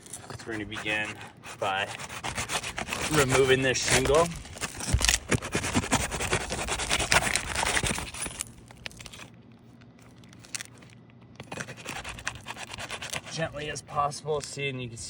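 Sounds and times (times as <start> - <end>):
roof shingle scraping: 0.0 - 9.3, 11.4 - 13.7.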